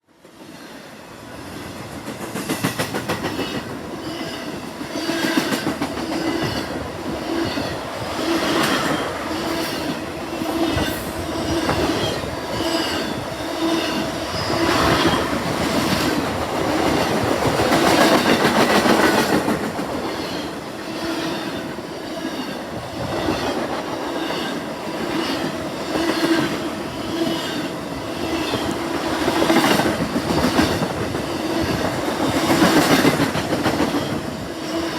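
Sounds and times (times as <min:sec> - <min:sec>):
freight train rumble: 0:01.2 - 0:34.9
train wheels clicking over rail joints: 0:01.7 - 0:06.8, 0:28.3 - 0:34.4.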